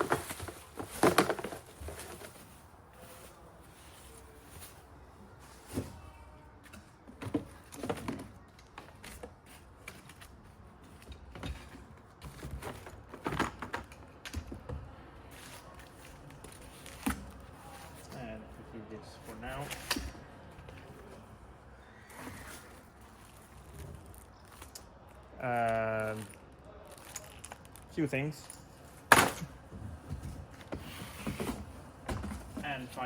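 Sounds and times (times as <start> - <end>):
plastic parts knocking and clicking: 0.0 - 2.4, 6.7 - 14.9.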